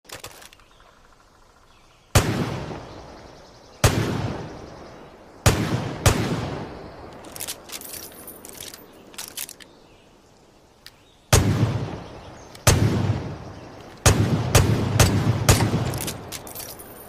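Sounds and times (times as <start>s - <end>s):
revolver gunshots with echo: 2.1s - 7.2s, 11.3s - 17.0s.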